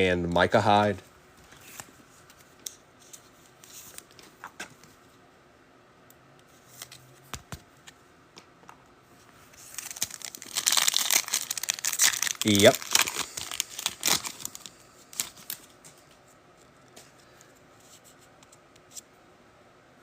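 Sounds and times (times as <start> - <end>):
cards clicking and tapping: 7.3 - 8.0
wrapper crinkling: 9.6 - 15.8.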